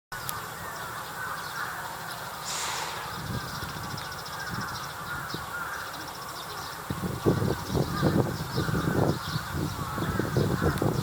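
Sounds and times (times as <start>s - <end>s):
bird chirps: 0.2s - 11.0s
rapid bird trill: 0.2s - 11.0s
crows cawing: 0.7s - 6.2s, 7.9s - 9.1s.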